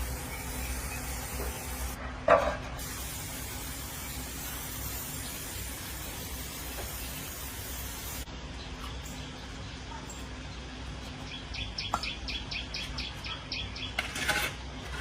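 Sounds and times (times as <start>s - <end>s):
hiss of spraying: 0.0s - 2.0s, 2.8s - 8.3s.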